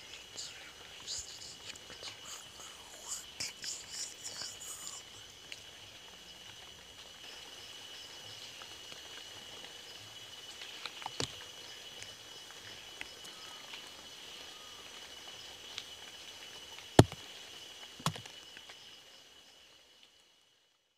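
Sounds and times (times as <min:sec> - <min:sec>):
night insects chirring: 0:00.0 - 0:20.7.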